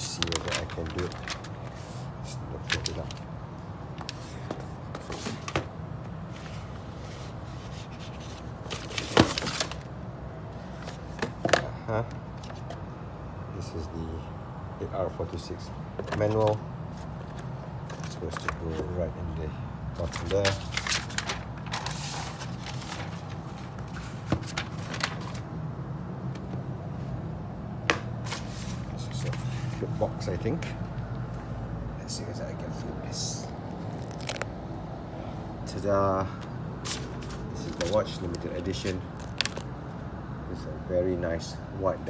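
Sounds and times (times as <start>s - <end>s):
paper packaging rustling: 0.0s - 3.3s, 3.9s - 10.0s, 16.0s - 19.1s, 19.9s - 25.6s, 27.9s - 30.7s, 33.7s - 34.6s, 36.8s - 39.9s
steady low hum: 0.0s - 42.0s.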